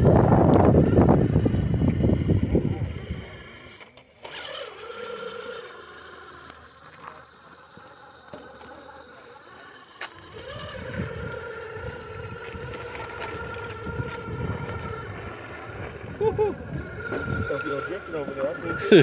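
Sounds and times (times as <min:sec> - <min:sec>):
electric motor and gears whining: 0:00.0 - 0:19.0
low uneven rumble: 0:08.6 - 0:19.0.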